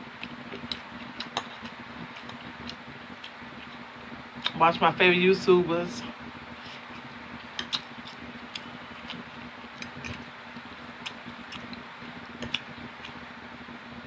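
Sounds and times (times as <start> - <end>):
faint steady hum: 0.0 - 14.0
person chewing food: 0.2 - 3.8, 6.6 - 13.3.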